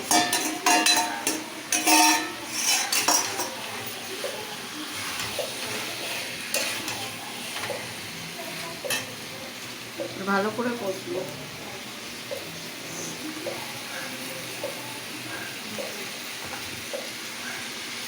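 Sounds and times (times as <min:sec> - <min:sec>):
spatula scraping a metal pan: 0:00.0 - 0:03.7, 0:04.9 - 0:07.7
frying sizzle: 0:00.0 - 0:18.0.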